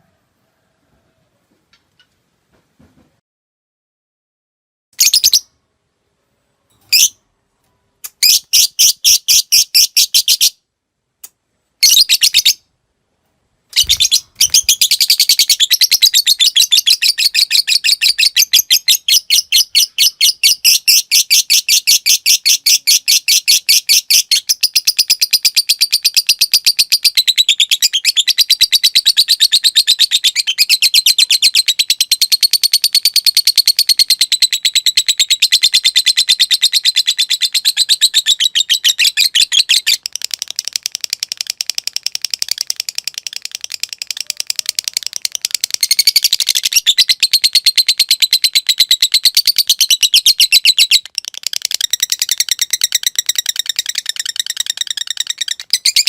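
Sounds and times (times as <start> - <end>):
lovebird chattering trill: 13.8 - 56.0.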